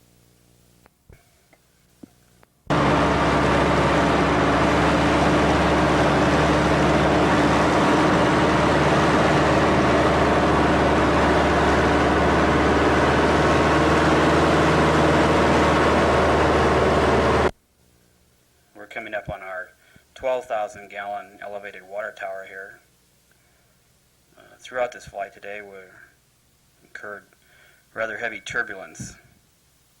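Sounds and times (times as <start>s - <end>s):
small airplane engine and propeller: 2.7s - 17.5s.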